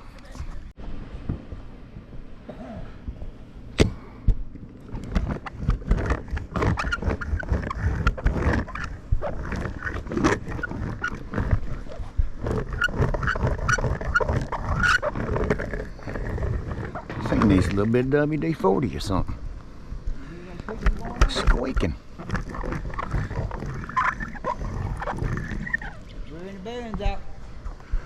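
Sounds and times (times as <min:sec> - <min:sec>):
hand roller squeaking: 0:04.9 - 0:17.9, 0:20.9 - 0:26.1.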